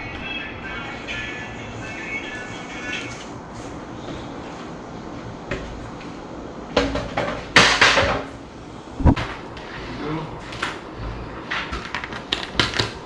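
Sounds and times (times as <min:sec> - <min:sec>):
short thump: 0:09.0 - 0:09.3.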